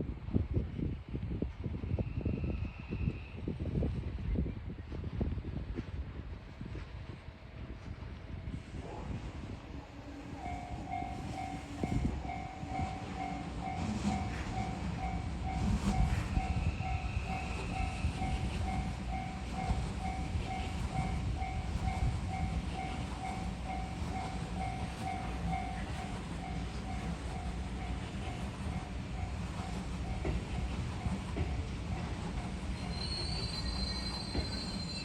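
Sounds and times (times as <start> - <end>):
train rumbling past: 4.8 - 35.0
level crossing warning bell: 10.3 - 32.8.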